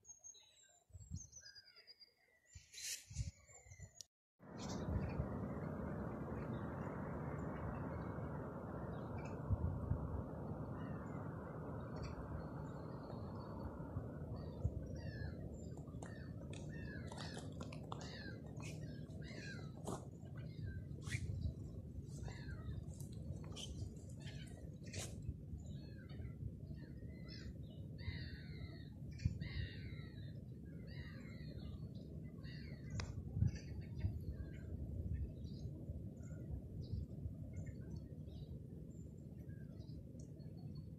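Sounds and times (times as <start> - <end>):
low background rumble: 4.4 - 40.9
small birds chirping: 10.5 - 40.9.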